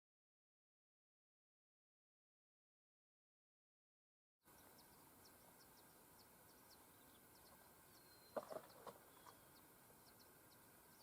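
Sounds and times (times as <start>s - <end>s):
small birds chirping: 4.4s - 11.0s.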